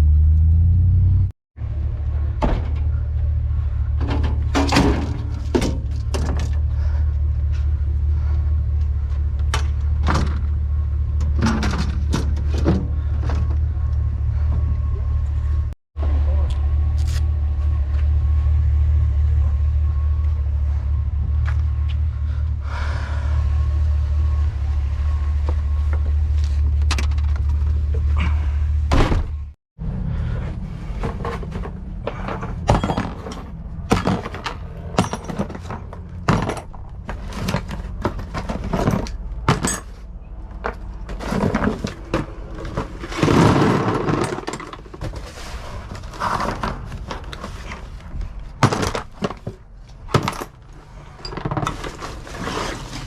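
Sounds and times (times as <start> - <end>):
metal scrap clanking in dumpster: 3.9 - 6.6, 31.0 - 40.0, 41.1 - 46.9
vehicle engine idling: 5.2 - 11.4, 12.4 - 28.9.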